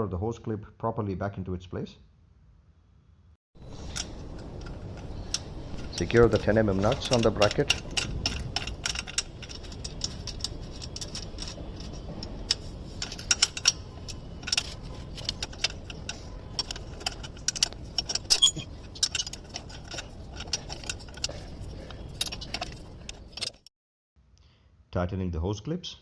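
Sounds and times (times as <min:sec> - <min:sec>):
spanner clinking on metal nuts: 0:03.6 - 0:23.7
low steady background hum: 0:03.6 - 0:26.0.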